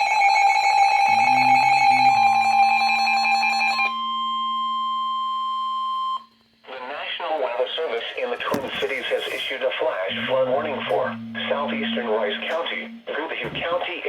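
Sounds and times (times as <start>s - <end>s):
steady high alert tone: 0.7s - 3.9s, 10.1s - 13.7s
harsh buzzing pulsing alert tone: 1.0s - 2.8s, 10.1s - 13.2s.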